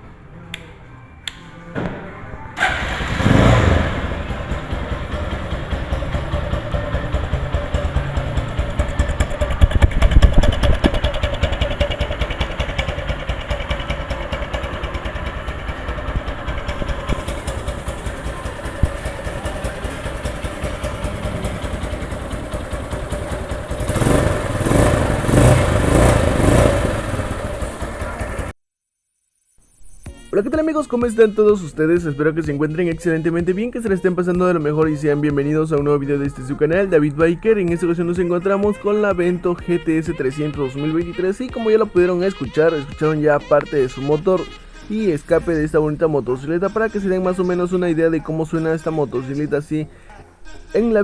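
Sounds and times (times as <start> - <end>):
motorcycle engine revving: 2.6 - 28.5.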